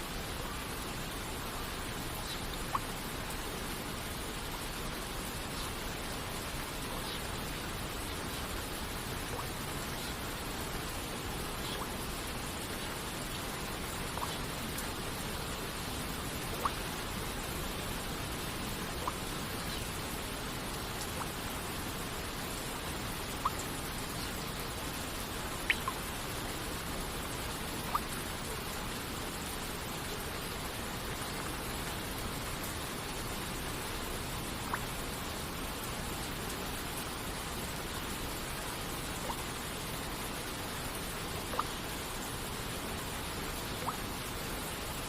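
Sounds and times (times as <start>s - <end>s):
rain hissing: 0.0s - 45.0s
water drops plinking: 16.5s - 16.8s, 25.6s - 26.0s, 41.5s - 41.8s.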